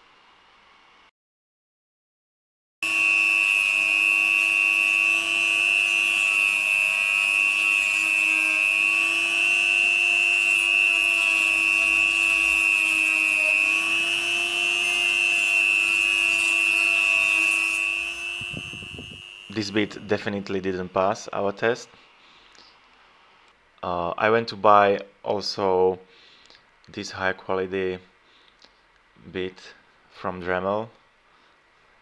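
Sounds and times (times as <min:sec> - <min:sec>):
rotary tool high-pitched whine: 0:02.8 - 0:20.4.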